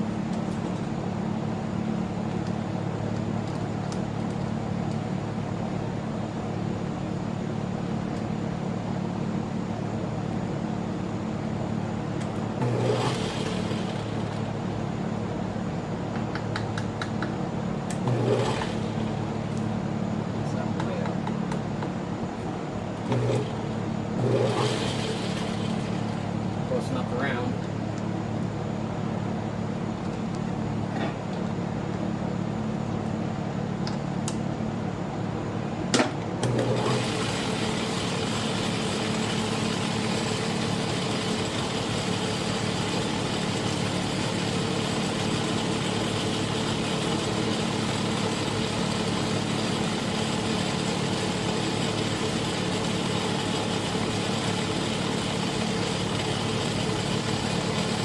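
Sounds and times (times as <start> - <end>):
lathe motor running: 12.2 - 15.0, 17.9 - 20.6, 22.7 - 27.6, 36.4 - 58.0.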